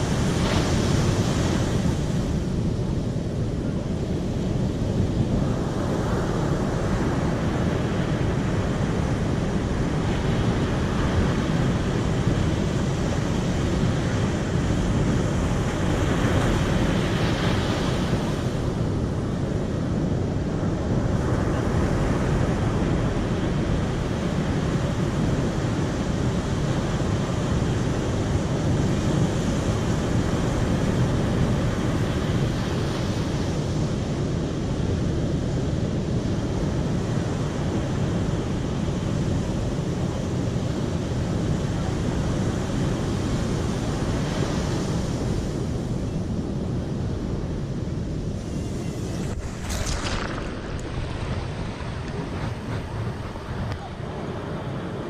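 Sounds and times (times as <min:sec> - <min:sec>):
water rushing: 0:48.4 - 0:54.1.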